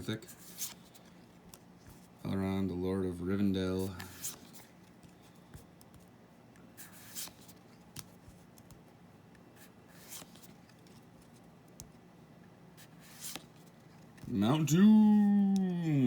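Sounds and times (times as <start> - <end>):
trading cards flipped by hand: 6.8 - 8.8, 9.9 - 12.0, 12.8 - 14.4.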